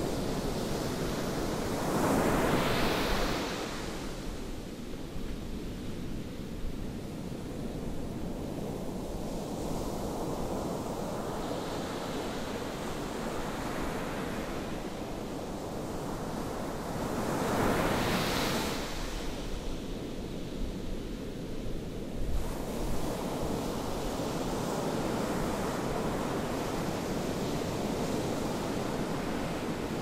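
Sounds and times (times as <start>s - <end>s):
wind noise on microphone: 16.9s - 30.0s.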